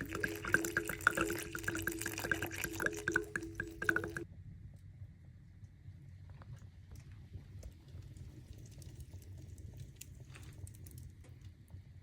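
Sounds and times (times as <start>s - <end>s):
water running and dripping: 0.0s - 4.3s.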